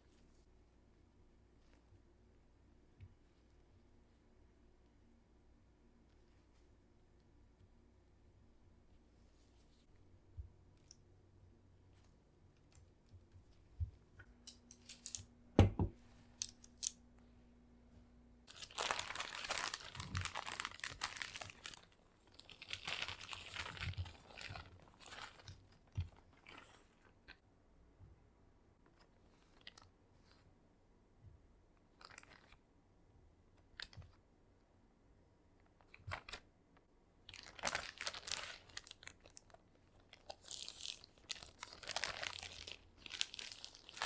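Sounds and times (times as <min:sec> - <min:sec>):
crinkly rustling: 0:18.5 - 0:27.4, 0:31.9 - 0:32.6, 0:37.3 - 0:44.0.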